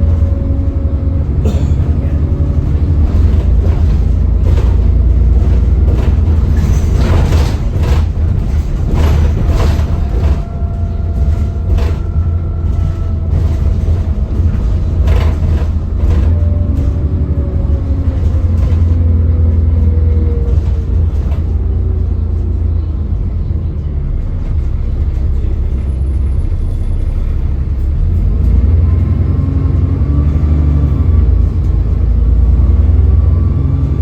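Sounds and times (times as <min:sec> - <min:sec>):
bus diesel engine rumble: 0:00.0 - 0:34.0
knocks and rattles: 0:01.4 - 0:22.0.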